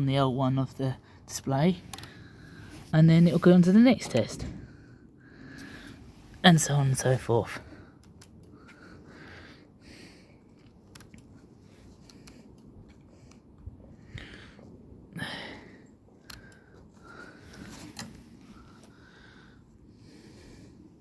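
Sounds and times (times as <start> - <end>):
small handling clicks: 1.9 - 2.2, 8.0 - 8.6, 10.4 - 13.7, 16.2 - 16.9.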